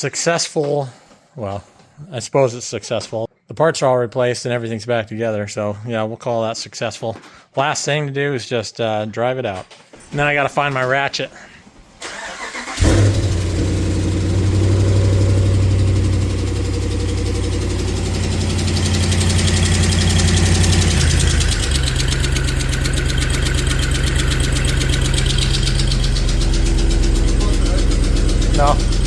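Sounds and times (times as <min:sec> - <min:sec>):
truck engine idling: 0:12.1 - 0:29.0.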